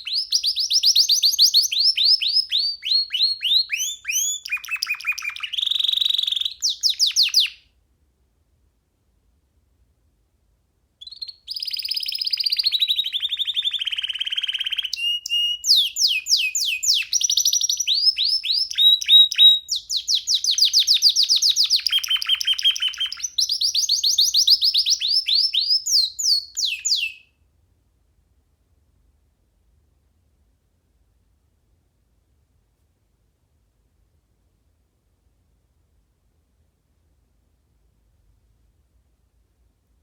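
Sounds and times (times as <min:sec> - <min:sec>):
canary singing trills: 0:00.0 - 0:07.6, 0:11.0 - 0:27.3.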